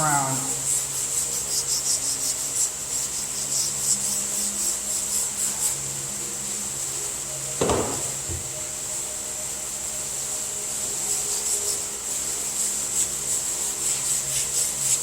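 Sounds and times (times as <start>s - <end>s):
sandpaper scratching on car panel: 0.0s - 5.9s, 10.8s - 15.0s
single knock: 7.6s - 8.6s.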